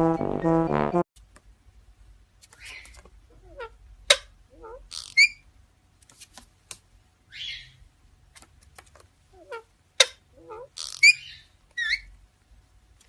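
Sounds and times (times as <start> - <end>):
parrot clicking squawking and whistling: 9.4 - 12.1.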